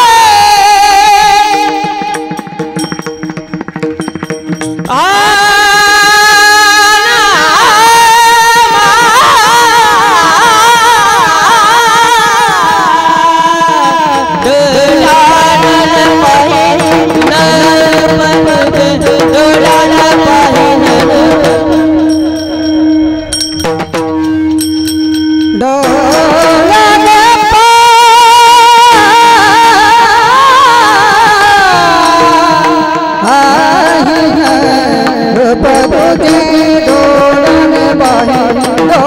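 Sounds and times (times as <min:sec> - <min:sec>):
person singing devotional song: 0:00.0 - 0:02.9, 0:04.8 - 0:23.5, 0:25.5 - 0:39.0
tabla: 0:00.0 - 0:39.0
held drone note: 0:15.0 - 0:27.6.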